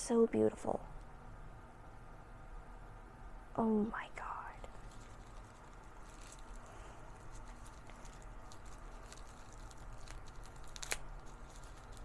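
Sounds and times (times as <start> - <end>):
packaging rustling: 4.7 - 12.0.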